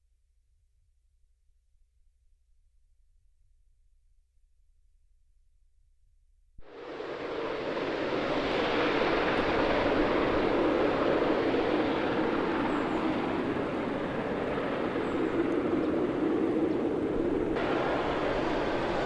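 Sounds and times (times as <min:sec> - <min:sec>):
airplane engine rush and hum: 0:06.6 - 0:19.0.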